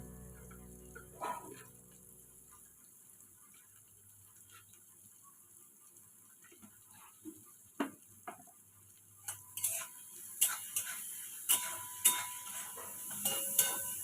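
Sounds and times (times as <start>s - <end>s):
frying hiss: 0.0s - 14.0s
utensils clicking against cookware: 9.3s - 14.0s.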